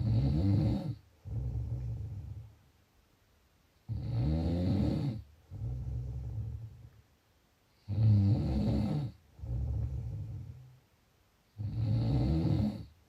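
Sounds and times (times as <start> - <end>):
person snoring: 0.0 - 2.4, 3.9 - 6.8, 7.8 - 10.6, 11.6 - 12.9.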